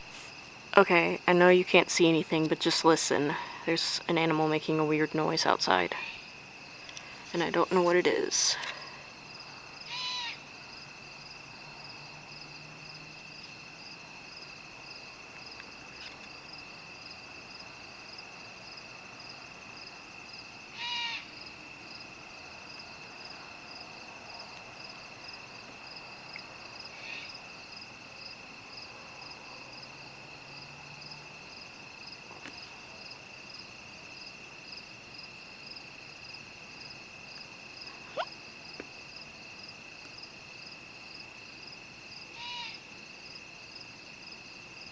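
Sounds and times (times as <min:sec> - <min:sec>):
night insects chirring: 0:00.0 - 0:44.9
animal harsh call: 0:09.9 - 0:10.4, 0:20.7 - 0:21.3.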